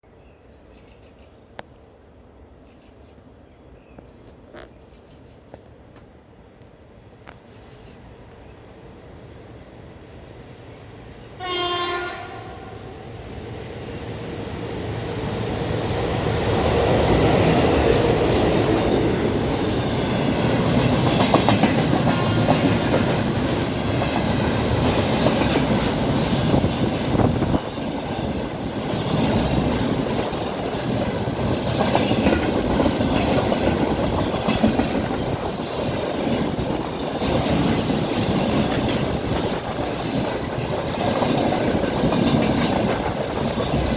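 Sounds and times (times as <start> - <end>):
train rumbling past: 1.8 - 43.9
locomotive horn blast: 11.4 - 12.9
wheels clattering over rail joints: 17.1 - 43.9.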